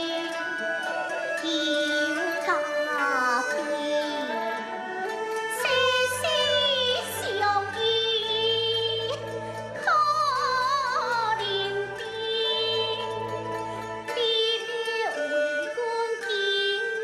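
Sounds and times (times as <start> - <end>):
opera music with wavering melody: 0.0 - 17.0.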